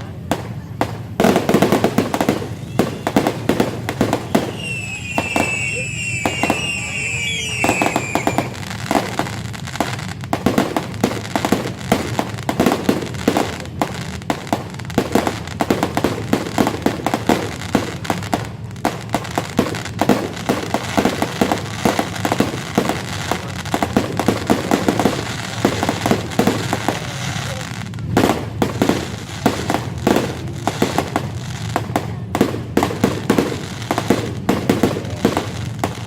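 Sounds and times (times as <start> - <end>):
fireworks bangs and crackles: 0.0 - 36.0
high wavering whistle: 4.1 - 8.6.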